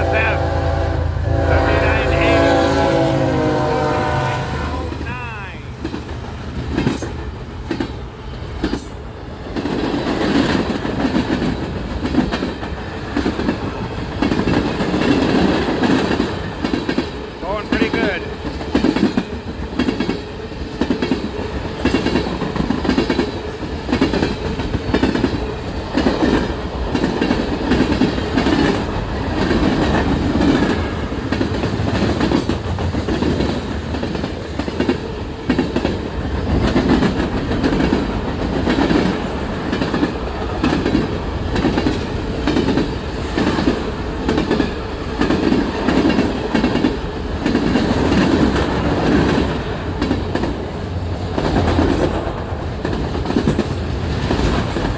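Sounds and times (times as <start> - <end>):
train wheels clacking over rail joints: 5.8 - 54.9.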